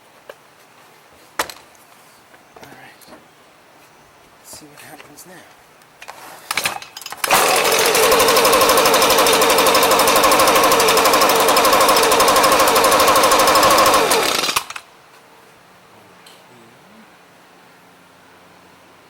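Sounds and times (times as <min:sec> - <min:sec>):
two-stroke engine running: 0:07.2 - 0:14.8.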